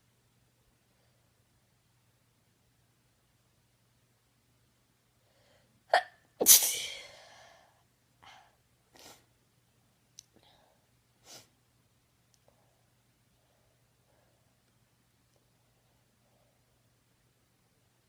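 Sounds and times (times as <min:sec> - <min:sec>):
faint breath sounds: 0:05.2 - 0:05.8, 0:07.0 - 0:09.3
person sneezing: 0:05.9 - 0:07.3.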